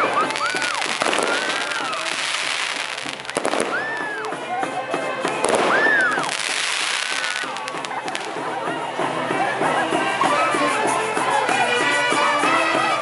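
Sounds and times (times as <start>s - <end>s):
sharp crackles: 0.0s - 4.4s, 5.3s - 8.4s
fireworks fizzing hiss: 0.0s - 4.5s, 5.2s - 8.4s
whistling fireworks: 0.0s - 4.5s, 5.2s - 8.3s.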